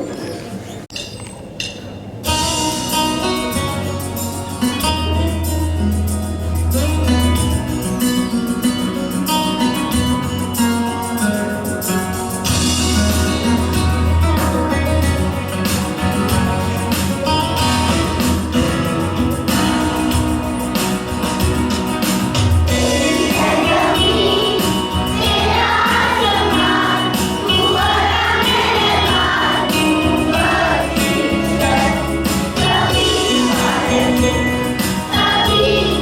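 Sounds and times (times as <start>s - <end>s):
guitar: 2.2s - 36.0s
person singing: 22.7s - 36.0s.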